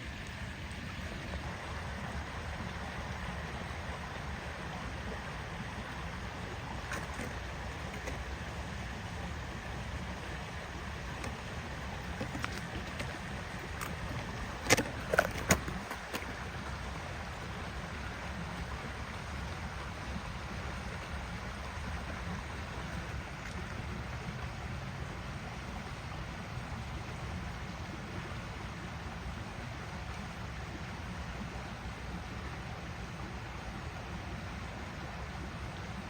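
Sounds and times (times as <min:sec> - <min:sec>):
outdoor rumble and hiss: 0:00.0 - 0:36.0.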